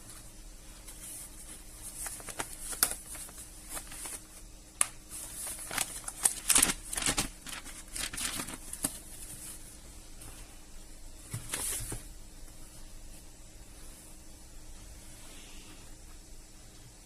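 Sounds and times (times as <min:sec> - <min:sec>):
crinkly rustling: 0:00.0 - 0:10.6, 0:11.2 - 0:14.2.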